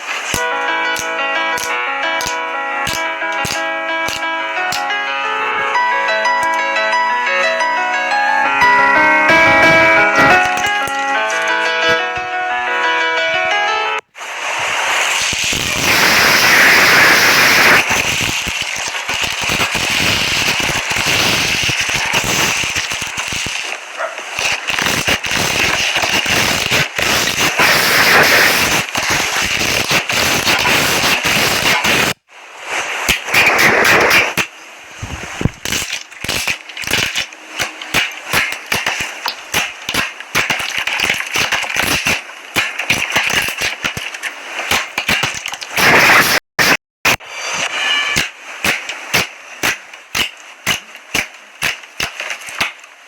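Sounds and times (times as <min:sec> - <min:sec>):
slime crackling and popping: 0:00.0 - 0:04.9, 0:14.7 - 0:32.2, 0:33.1 - 0:34.5, 0:35.4 - 0:47.2, 0:48.2 - 0:52.9.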